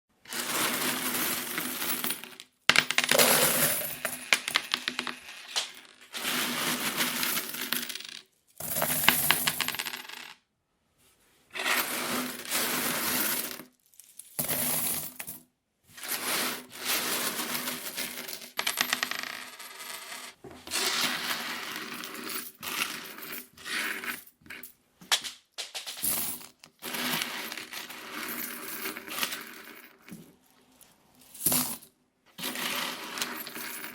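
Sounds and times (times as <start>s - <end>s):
coins clinking and jingling: 0.4s - 10.3s, 32.5s - 33.9s.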